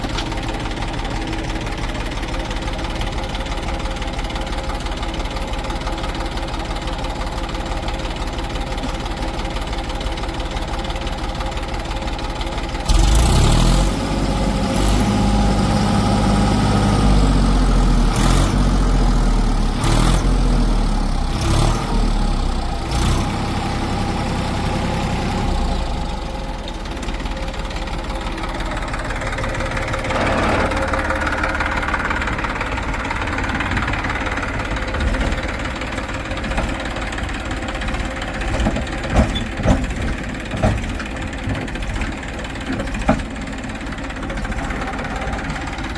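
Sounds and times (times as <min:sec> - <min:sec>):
diesel engine idling and revving: 0:00.0 - 0:45.9.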